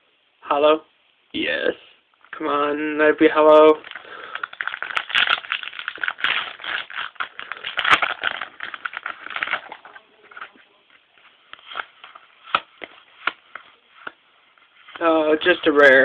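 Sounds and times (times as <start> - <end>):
card pack crinkling and clicking: 3.8 - 10.6, 11.5 - 14.2.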